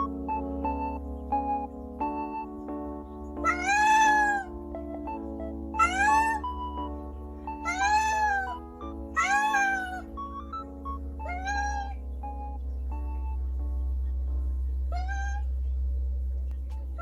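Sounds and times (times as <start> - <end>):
soft background music: 0.0 - 17.0
cat meowing: 3.4 - 4.5, 5.8 - 6.4, 7.6 - 8.6, 9.2 - 10.1, 11.2 - 12.0, 14.9 - 15.5.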